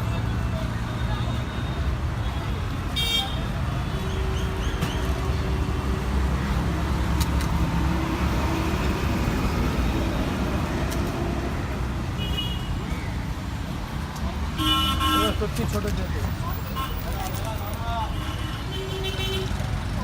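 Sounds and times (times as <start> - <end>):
traffic engine rumble: 0.0 - 20.0.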